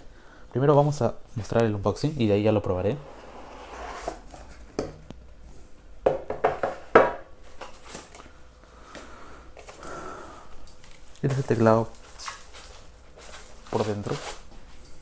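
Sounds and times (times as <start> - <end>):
packaging rustling: 10.6 - 14.9.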